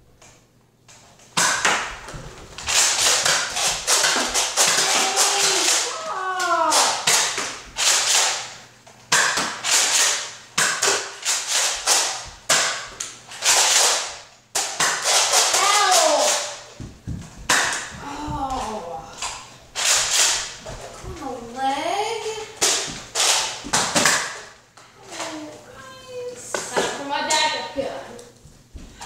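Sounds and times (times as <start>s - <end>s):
toy blasters firing: 2.6s - 5.9s, 6.6s - 12.8s, 13.4s - 16.6s, 19.8s - 20.5s, 22.6s - 24.4s
person crying out: 4.7s - 7.0s.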